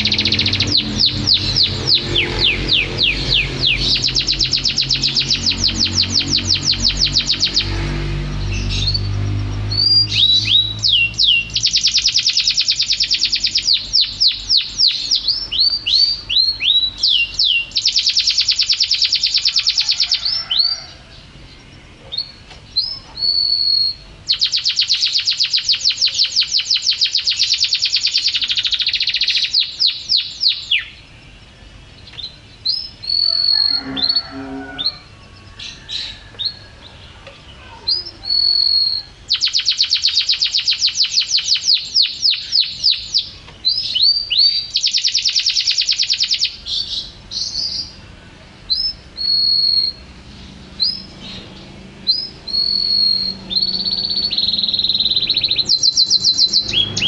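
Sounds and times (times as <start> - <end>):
canary singing trills: 0.0 - 57.0.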